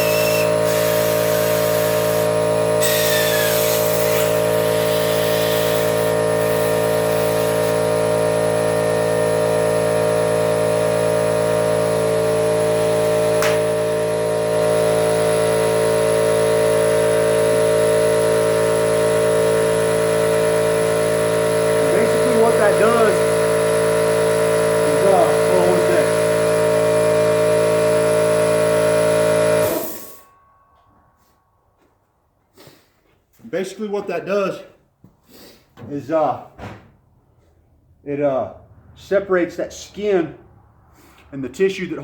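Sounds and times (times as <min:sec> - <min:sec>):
air hissing: 0:00.0 - 0:07.8
air compressor running: 0:00.0 - 0:30.3
sharp click: 0:13.4 - 0:13.6.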